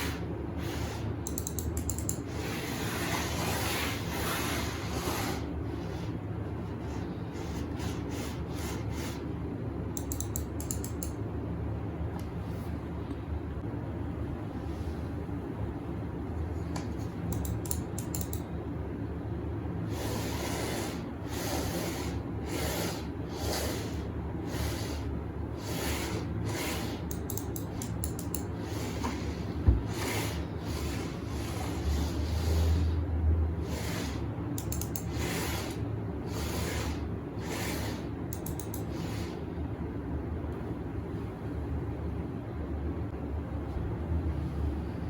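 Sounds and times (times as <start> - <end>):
low steady hum: 0.0 - 45.0
rapid light clicks: 1.2 - 2.3, 9.9 - 11.2, 17.3 - 18.5, 27.0 - 28.5, 34.5 - 35.2, 38.3 - 39.0
rubbing strokes: 2.3 - 9.2.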